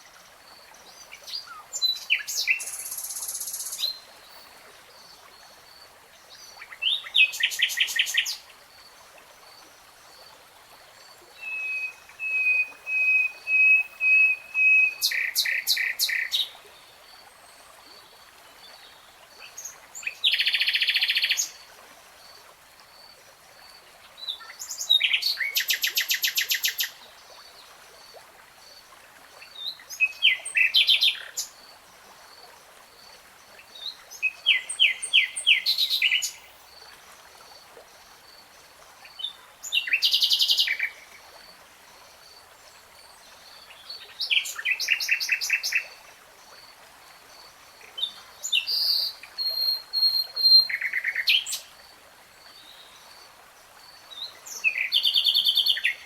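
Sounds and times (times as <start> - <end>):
songbird trilling: 11.4 - 16.3.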